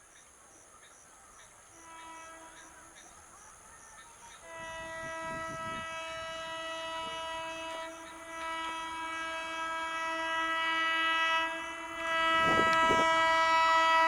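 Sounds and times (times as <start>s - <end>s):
train air horn blasts: 1.7s - 3.0s, 4.3s - 14.0s.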